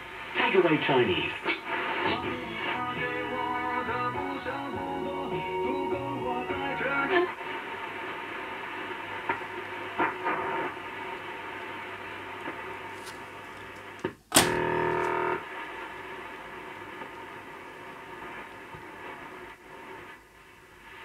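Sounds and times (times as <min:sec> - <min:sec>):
radio static hiss: 0:00.0 - 0:21.0
loud buzzing tone: 0:14.3 - 0:15.4.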